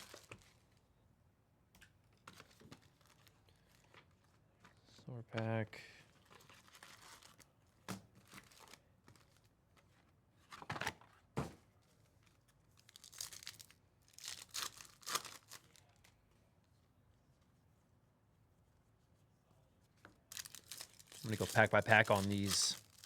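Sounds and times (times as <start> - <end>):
wrapper tearing and crinkling: 0.0 - 0.6, 6.4 - 7.4, 8.3 - 9.4, 12.8 - 16.1, 20.3 - 23.0.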